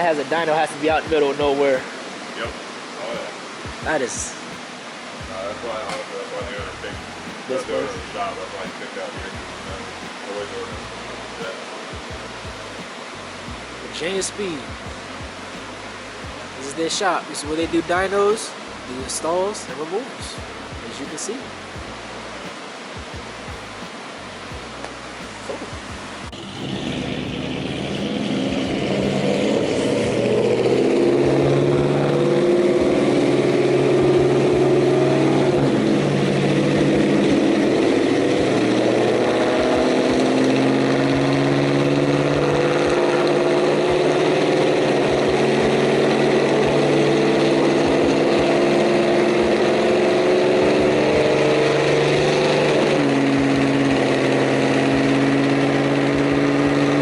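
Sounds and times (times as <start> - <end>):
car engine running loud: 25.5 - 57.0.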